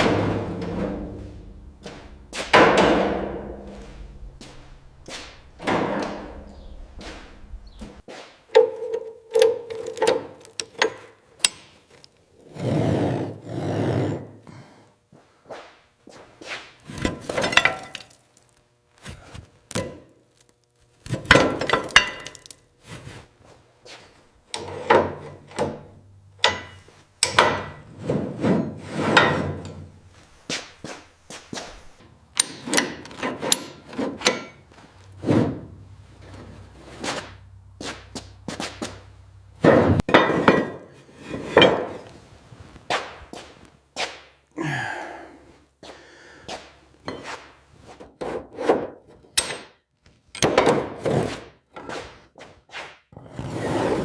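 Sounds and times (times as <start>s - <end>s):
hand tool knocks and scrapes: 0.0s - 11.8s, 23.9s - 29.9s, 32.4s - 42.2s, 46.6s - 49.8s.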